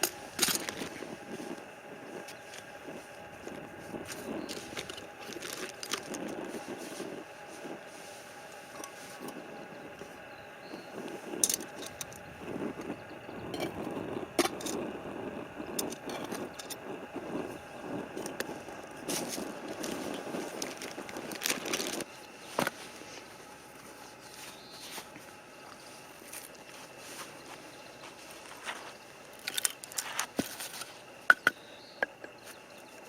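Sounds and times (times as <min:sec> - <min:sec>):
sharp clicks and knocks: 0:31.3 - 0:32.4.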